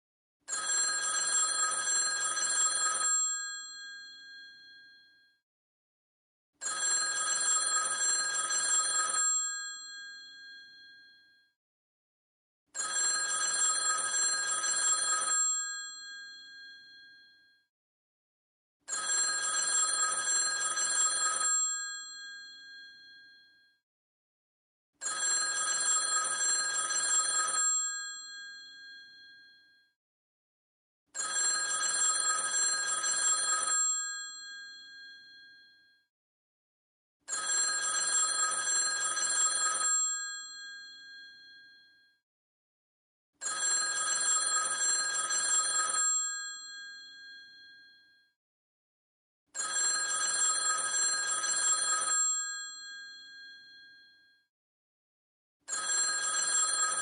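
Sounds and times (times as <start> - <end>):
telephone bell ringing: 0.5 - 5.4, 6.6 - 11.5, 12.8 - 17.6, 18.9 - 23.7, 25.0 - 29.9, 31.2 - 36.0, 37.3 - 42.2, 43.4 - 48.3, 49.6 - 54.4, 55.7 - 57.0.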